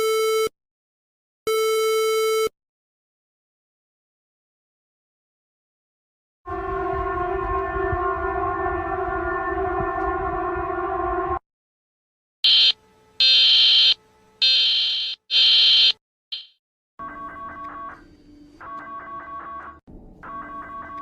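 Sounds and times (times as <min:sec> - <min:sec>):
chord-like alarm tone: 0:06.5 - 0:11.4.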